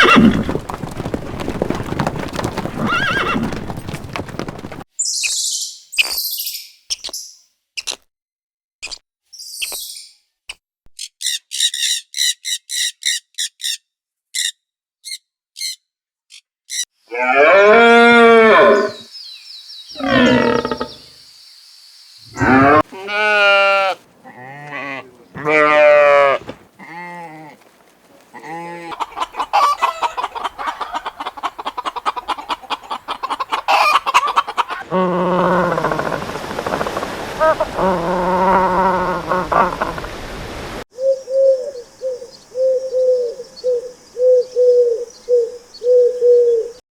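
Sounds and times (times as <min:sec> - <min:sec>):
loud drawn-out animal calls: 0:00.0 - 0:04.5, 0:16.7 - 0:19.1, 0:20.0 - 0:21.1, 0:22.3 - 0:27.6, 0:28.3 - 0:40.3
chickens clucking: 0:28.3 - 0:34.9.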